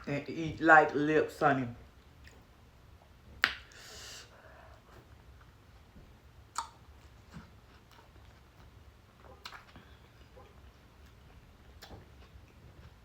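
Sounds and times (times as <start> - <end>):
mouth clicks: 6.5 - 6.8
person chewing: 6.5 - 13.0.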